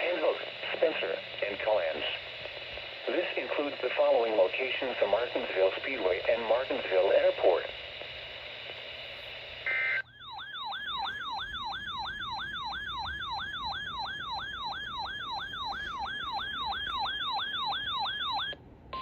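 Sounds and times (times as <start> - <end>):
falling siren sweep: 9.7 - 18.6.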